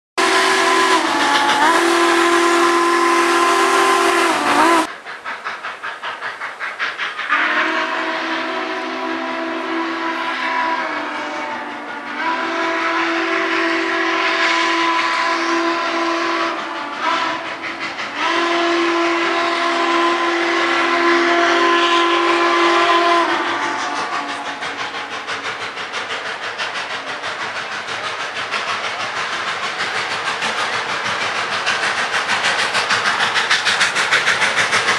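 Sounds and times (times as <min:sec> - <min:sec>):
steam whistle blasts: 0:00.2 - 0:04.9, 0:07.2 - 0:26.7
rhythmic train clatter: 0:00.2 - 0:34.9.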